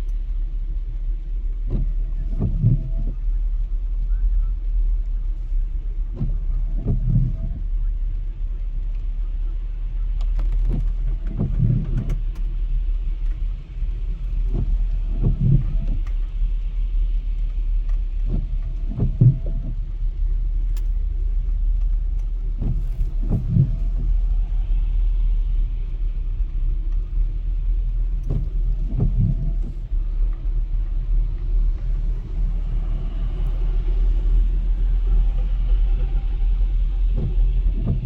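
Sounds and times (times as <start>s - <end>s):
car road and engine rumble: 0.0s - 38.0s
short low thump: 18.2s - 19.8s, 22.1s - 24.4s, 27.9s - 38.0s.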